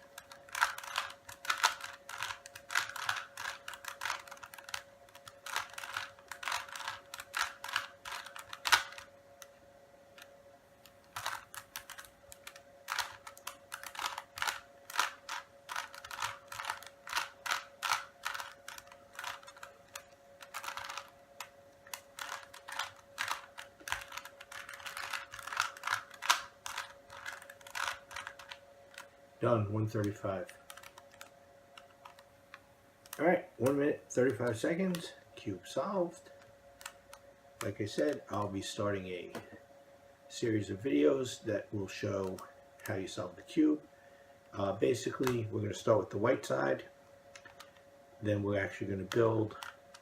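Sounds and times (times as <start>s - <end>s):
puzzle cube plastic clicks: 0.0s - 9.6s, 10.2s - 29.1s, 29.9s - 35.1s, 47.3s - 47.8s, 49.0s - 50.0s
faint steady hum: 0.0s - 50.0s.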